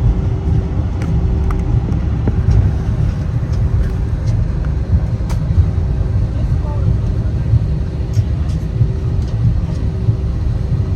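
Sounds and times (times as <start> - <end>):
constant hum: 0.0 - 10.9
jet engines rumbling: 0.0 - 10.9.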